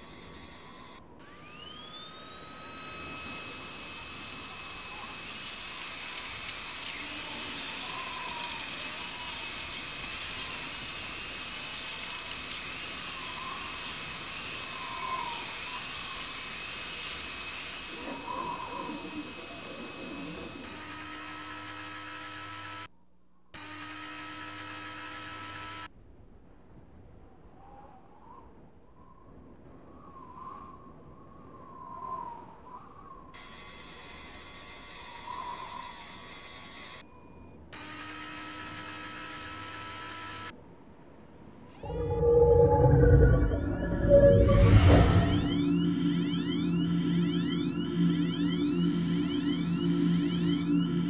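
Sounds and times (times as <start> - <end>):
high wavering drill-like whine: 0.0 - 22.9, 23.6 - 25.9, 33.4 - 40.6, 41.7 - 51.0
motor-like tone: 0.0 - 22.9, 23.6 - 25.9, 33.4 - 40.5, 41.7 - 51.0
steady electronic hum: 1.8 - 22.5, 41.7 - 51.0.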